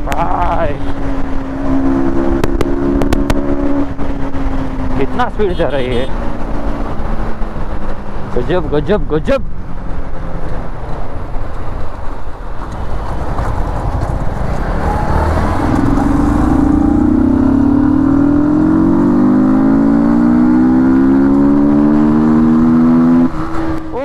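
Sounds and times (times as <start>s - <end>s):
road noise: 0.0s - 24.0s
motorcycle engine accelerating: 0.1s - 8.4s, 9.6s - 24.0s
wind rush: 10.9s - 19.4s.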